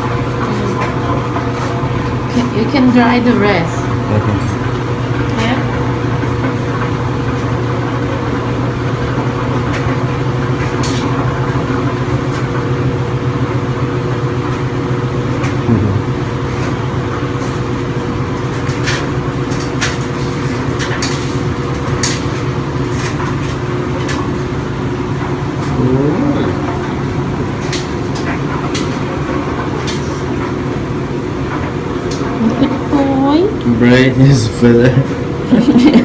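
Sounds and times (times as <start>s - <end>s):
electric blower humming: 0.0s - 36.0s.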